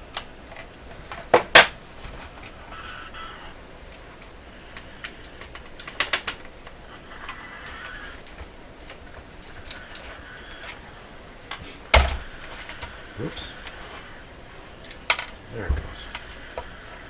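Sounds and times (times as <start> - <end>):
sharp clicks: 3.9 - 10.8.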